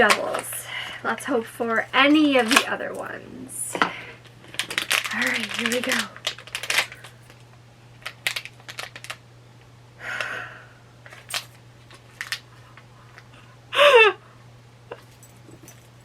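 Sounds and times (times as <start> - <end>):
packaging crinkling tear: 4.2 - 9.2, 11.1 - 12.6.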